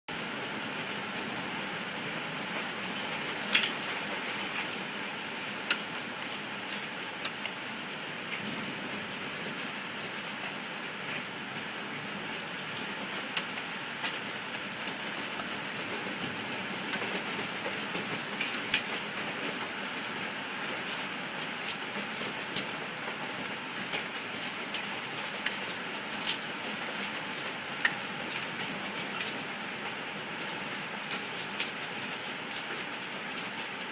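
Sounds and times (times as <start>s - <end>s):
hail pattering on a patio: 0.1s - 33.9s.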